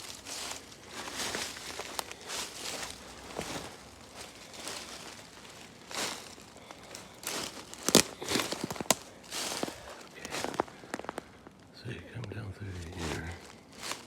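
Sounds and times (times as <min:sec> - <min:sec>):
twigs snapping: 0:00.0 - 0:11.7, 0:12.8 - 0:14.0
footsteps through leaves and brush: 0:00.0 - 0:12.0, 0:12.6 - 0:14.0.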